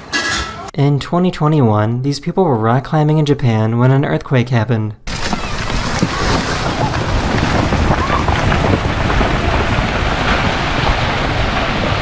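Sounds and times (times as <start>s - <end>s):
wind buffeting microphone: 5.1s - 12.0s.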